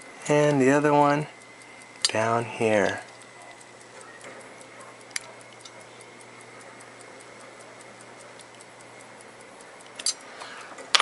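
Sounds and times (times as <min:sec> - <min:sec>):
pocket watch ticking: 0:00.0 - 0:11.0
sharp click: 0:00.5 - 0:06.2, 0:09.8 - 0:10.3.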